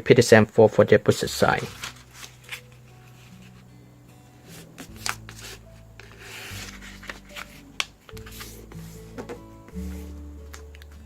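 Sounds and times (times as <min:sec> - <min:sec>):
soft background music: 0:00.0 - 0:11.0
paper being folded: 0:01.2 - 0:03.7, 0:04.4 - 0:09.1.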